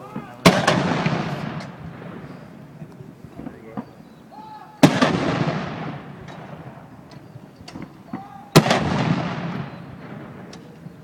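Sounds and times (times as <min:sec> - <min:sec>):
cannon firing with rolling echo: 0:00.1 - 0:02.7, 0:04.8 - 0:07.1, 0:07.8 - 0:11.0.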